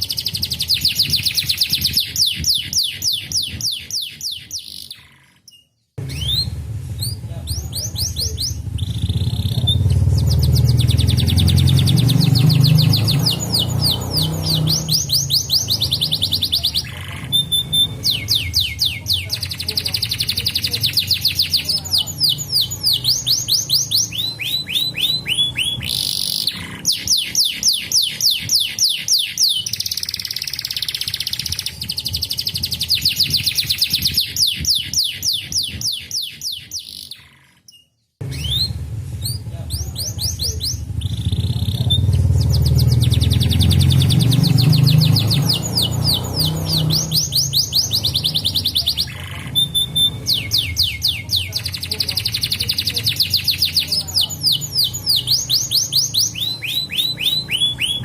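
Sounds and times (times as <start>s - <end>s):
canary singing in rolling trills: 0.0s - 58.0s
low rumble: 6.0s - 16.7s.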